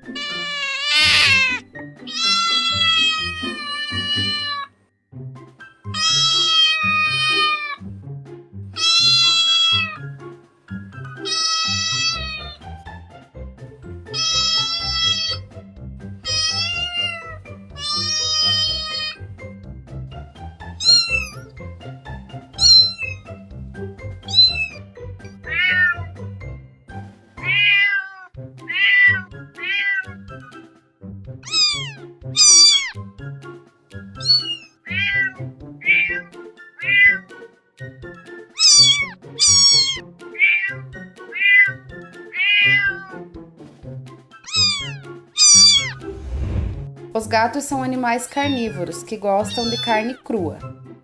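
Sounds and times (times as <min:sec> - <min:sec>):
cat meowing: 0:00.0 - 0:04.7, 0:06.0 - 0:07.8, 0:08.8 - 0:10.1, 0:11.2 - 0:12.6, 0:14.1 - 0:15.4, 0:16.2 - 0:19.2, 0:20.8 - 0:21.4, 0:22.6 - 0:23.2, 0:24.2 - 0:24.8, 0:25.4 - 0:26.1, 0:27.4 - 0:30.2, 0:31.4 - 0:33.0, 0:34.2 - 0:37.3, 0:38.6 - 0:43.2, 0:44.5 - 0:46.1, 0:49.4 - 0:50.2
background music: 0:00.0 - 0:51.0.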